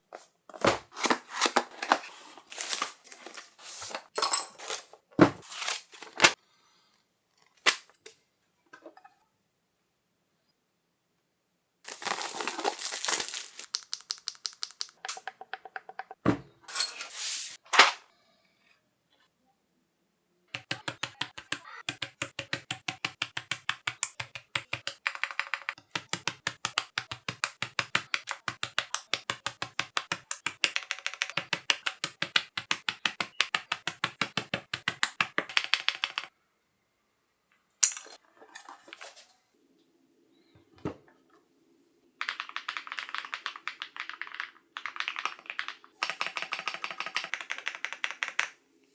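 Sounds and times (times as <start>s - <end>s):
mechanical keyboard typing: 20.5s - 36.3s, 42.2s - 48.6s.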